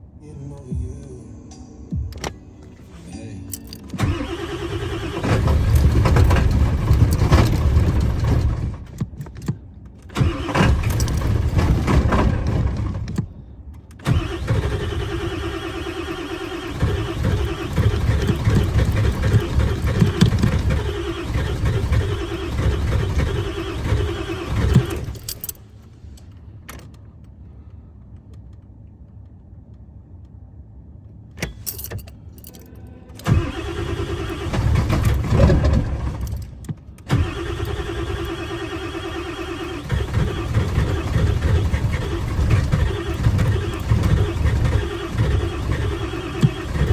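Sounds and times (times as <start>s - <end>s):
engine cranking and starting: 3.7s - 25.7s, 31.4s - 46.9s
diesel engine running rough: 4.0s - 9.0s, 14.0s - 25.3s, 37.1s - 46.9s.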